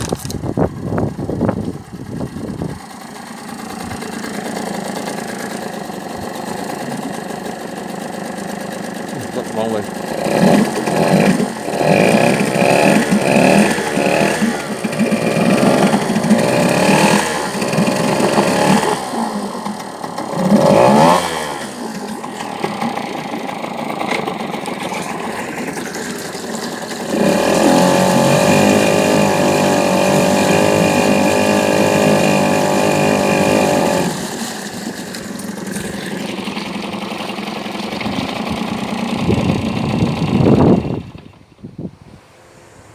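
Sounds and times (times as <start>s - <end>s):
two-stroke outboard motor running: 0.0s - 41.6s.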